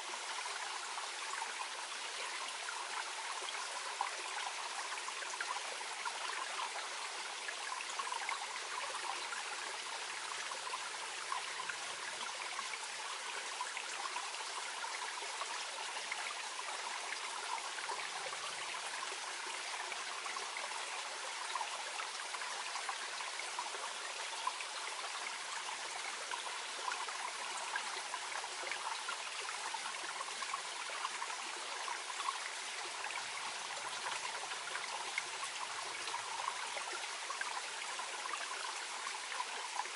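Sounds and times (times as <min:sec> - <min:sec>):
stream babbling over stones: 0:00.0 - 0:39.9.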